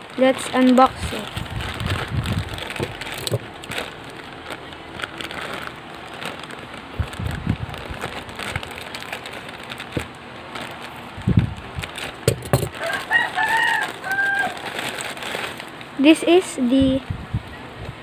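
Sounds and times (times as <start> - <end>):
plastic packaging rustling and crackling: 0.0 - 17.0
rooster crowing: 12.7 - 14.8.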